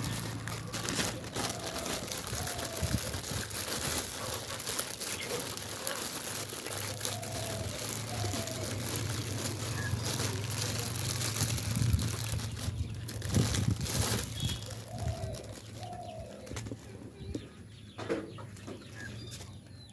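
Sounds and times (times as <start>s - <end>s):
birds calling: 0.0s - 19.9s.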